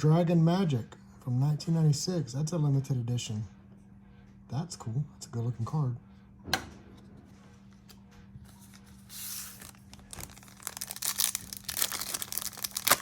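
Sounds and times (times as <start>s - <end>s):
plastic wrapper crinkling and tearing: 8.6s - 13.0s.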